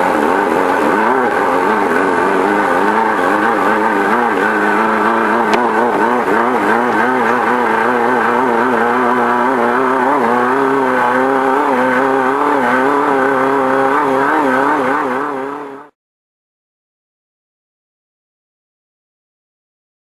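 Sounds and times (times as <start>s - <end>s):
steady rushing noise: 0.0s - 15.9s
race car engine revving: 0.0s - 16.0s.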